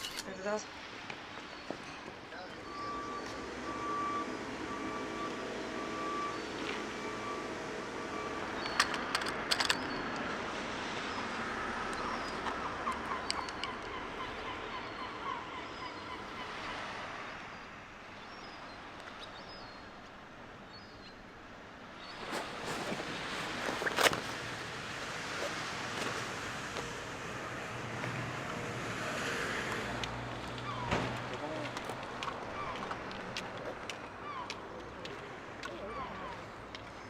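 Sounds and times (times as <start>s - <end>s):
reversing beeper: 2.5s - 8.8s.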